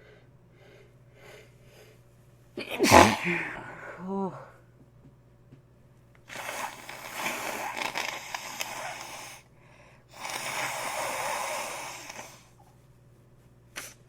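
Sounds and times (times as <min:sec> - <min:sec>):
congested nose blowing air: 0:02.7 - 0:03.6, 0:06.3 - 0:09.4, 0:10.1 - 0:12.6
wet mucus crackle: 0:06.3 - 0:09.4.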